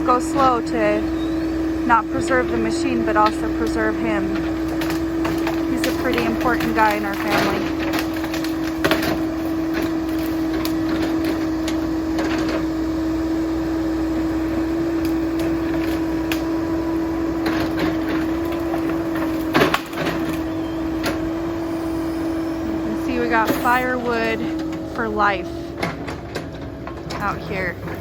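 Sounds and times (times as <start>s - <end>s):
excavator engine humming: 0.0s - 28.0s
branches cracking and breaking: 3.6s - 12.6s, 15.0s - 21.3s.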